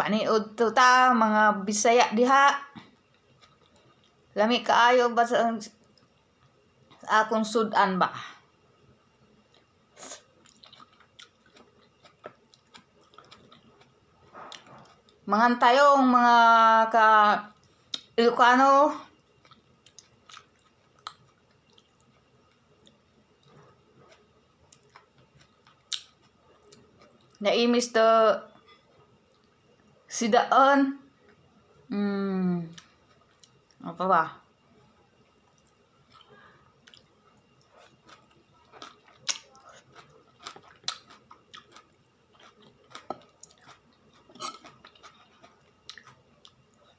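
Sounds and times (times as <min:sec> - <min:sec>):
soft chewing: 0:02.7 - 0:04.4, 0:05.7 - 0:07.0, 0:09.2 - 0:15.3, 0:19.0 - 0:27.4, 0:28.5 - 0:30.0, 0:32.7 - 0:33.8, 0:34.8 - 0:46.9.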